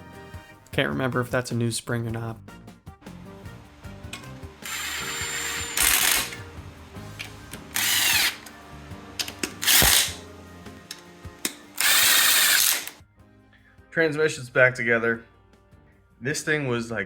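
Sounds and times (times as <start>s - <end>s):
background music: 0.0s - 17.0s
power tool bursts: 4.6s - 6.5s, 7.7s - 8.5s, 9.6s - 10.2s, 11.5s - 13.0s.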